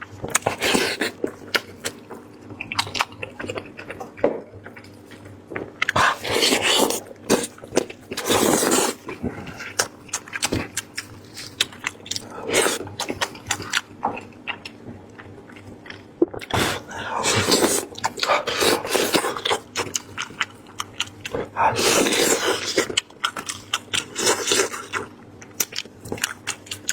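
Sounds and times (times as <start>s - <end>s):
wet chewing and mouth smacks: 2.6s - 16.6s.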